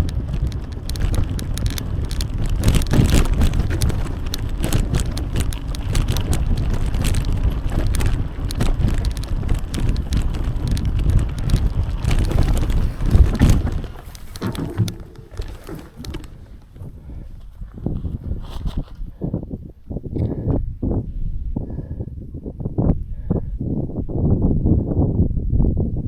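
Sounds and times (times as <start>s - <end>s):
bicycle rattles and clicks: 0.0s - 19.4s
bicycle tyre rumble: 0.0s - 25.9s
wind noise on microphone: 0.0s - 26.0s.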